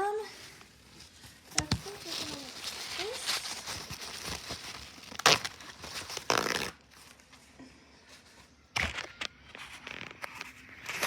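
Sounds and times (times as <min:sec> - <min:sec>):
paper towel rustling: 0:00.0 - 0:07.3.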